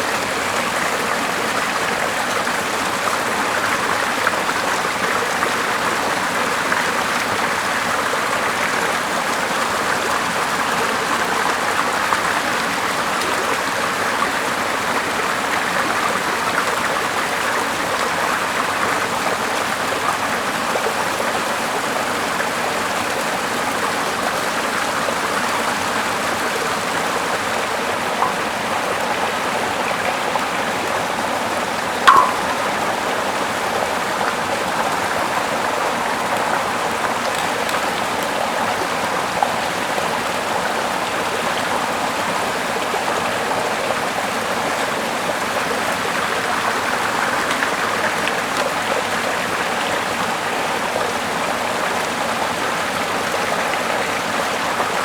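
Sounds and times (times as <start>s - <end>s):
running water: 0.0s - 55.0s
sharp click: 32.1s - 32.8s.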